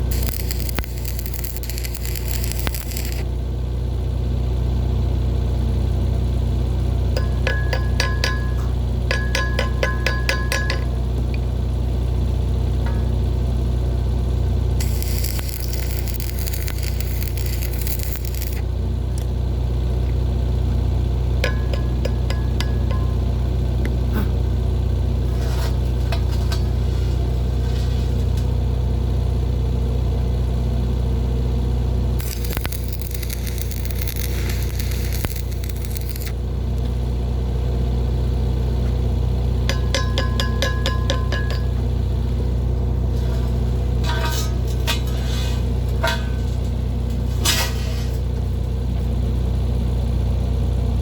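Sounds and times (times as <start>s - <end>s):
arc welding crackling: 0.0s - 3.3s, 14.7s - 19.3s, 32.2s - 36.8s
low machine hum: 0.0s - 51.0s
ringing metal taps: 7.2s - 11.2s, 21.4s - 23.3s, 39.7s - 41.9s.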